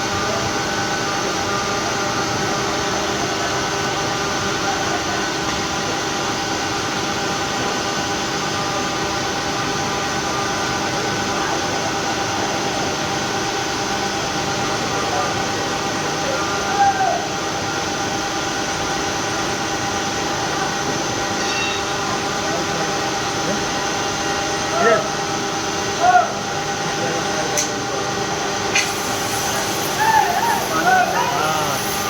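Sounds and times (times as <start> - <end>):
furnace hum: 0.0 - 32.0
loud machinery noise: 0.0 - 32.0
high steady whine: 28.6 - 32.0.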